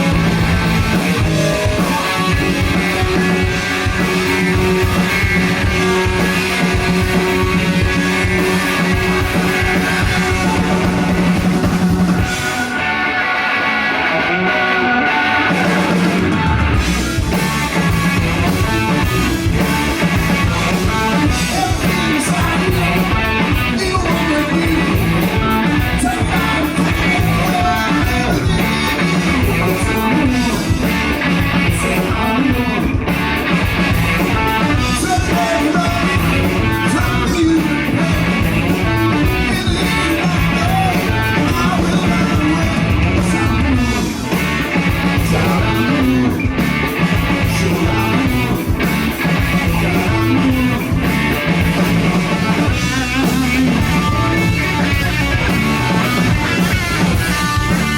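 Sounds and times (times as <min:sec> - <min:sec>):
electric guitar: 0:00.0 - 0:57.9
live rock band: 0:00.0 - 0:57.9.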